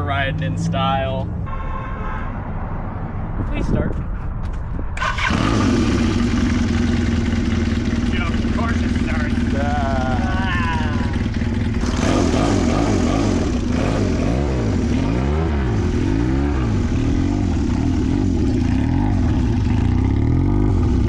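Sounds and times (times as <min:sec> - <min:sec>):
motorcycle engine revving and idling: 0:04.4 - 0:21.0.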